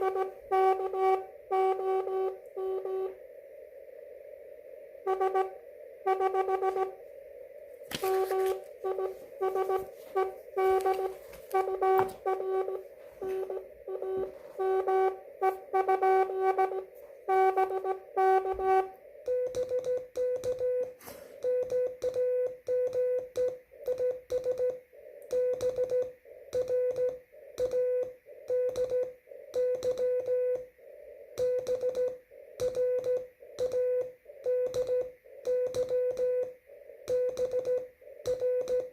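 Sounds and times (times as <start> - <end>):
morse code beeps: 0.0 - 3.2, 5.0 - 7.0, 7.9 - 38.9
radio band noise hiss: 0.0 - 19.3, 20.9 - 21.4, 30.6 - 31.4, 36.5 - 37.2.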